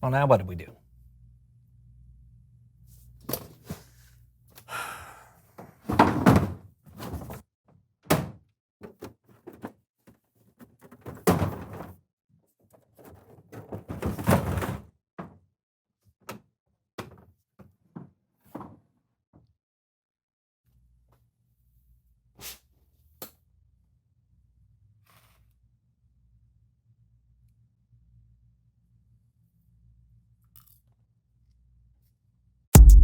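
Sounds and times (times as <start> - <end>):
knocks and thumps: 32.8 - 33.0
loud bangs: 32.8 - 33.0.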